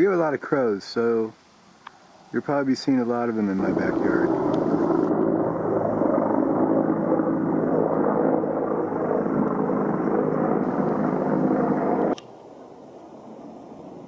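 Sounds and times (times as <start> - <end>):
loud mechanical drone: 3.6 - 8.2, 9.9 - 12.2.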